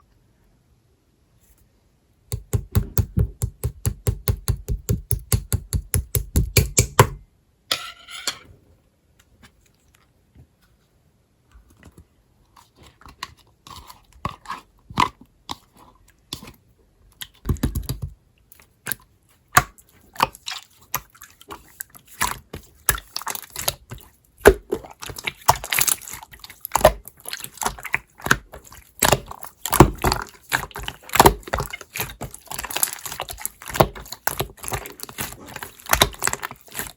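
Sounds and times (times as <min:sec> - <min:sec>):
slime squishing and popping: 0:22.1 - 0:36.9.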